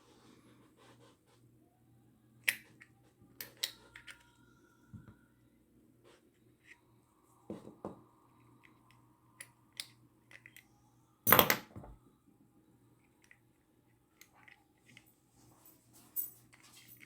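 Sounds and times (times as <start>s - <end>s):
lock parts clicking and tapping: 11.3s - 12.0s.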